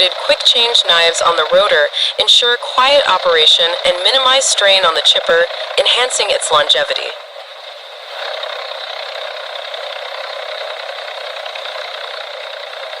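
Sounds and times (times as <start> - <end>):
wood chipper running: 5.5 - 5.8, 7.2 - 13.0.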